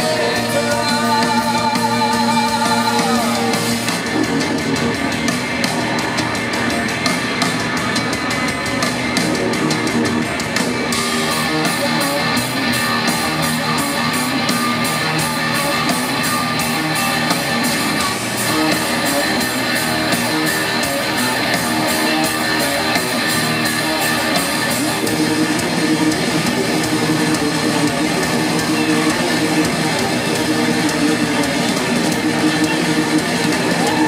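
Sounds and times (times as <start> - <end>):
electric guitar: 0.0 - 34.0
live rock band playing: 0.0 - 34.0
steady drum beat: 0.0 - 34.0.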